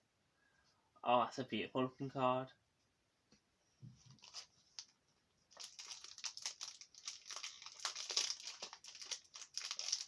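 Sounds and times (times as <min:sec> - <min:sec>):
foil wrapper crinkling: 0:04.2 - 0:04.9, 0:05.5 - 0:10.0.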